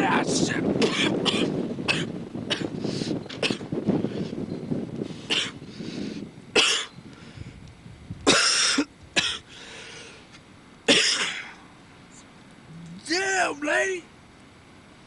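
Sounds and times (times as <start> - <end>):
man coughing: 0.8 - 2.7, 6.6 - 6.9, 8.3 - 9.4, 10.9 - 11.5.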